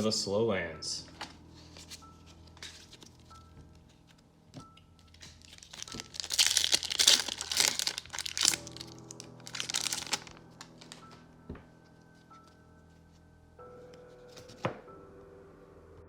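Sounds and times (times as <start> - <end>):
foil wrapper crinkling and tearing: 5.1 - 11.1.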